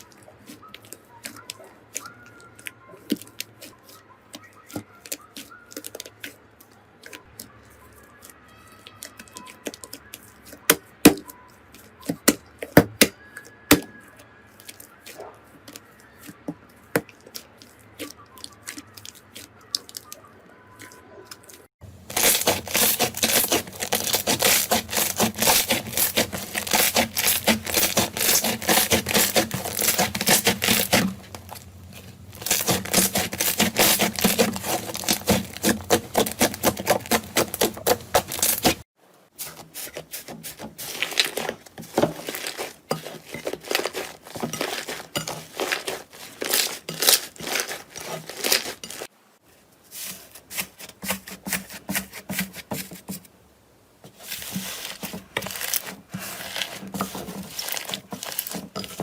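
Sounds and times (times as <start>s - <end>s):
slime crackling and popping: 22.0s - 38.8s, 42.2s - 49.1s, 55.5s - 59.0s.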